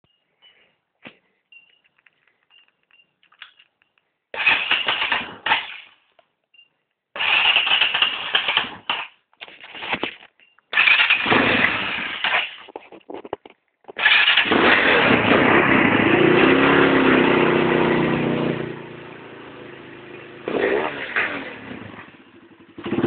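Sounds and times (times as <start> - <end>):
motorcycle engine revving: 4.4 - 5.8, 7.2 - 9.0, 10.8 - 12.6, 14.0 - 23.0.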